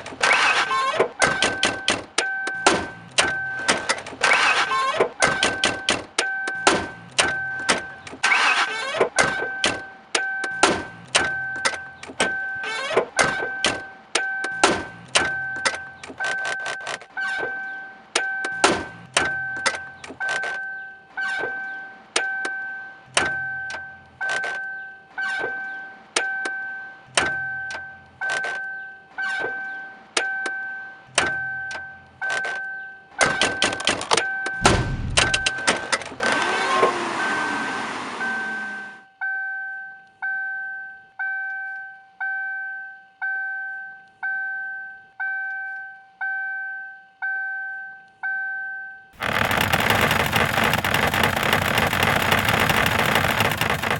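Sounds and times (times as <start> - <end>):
loud low burst: 34.6 - 35.7
low thump: 34.6 - 35.7
rhythmic clicks and knocks: 34.6 - 35.8, 49.2 - 53.9.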